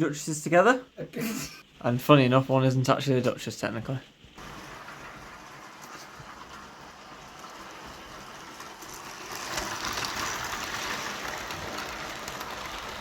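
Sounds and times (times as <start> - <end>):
model train motor whirring: 4.4 - 13.0
wheels rushing on rails: 4.4 - 13.0.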